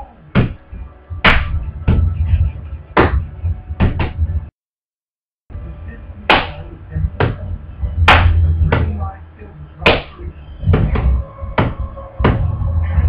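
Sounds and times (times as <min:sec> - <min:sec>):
steady bass: 0:05.5 - 0:13.0.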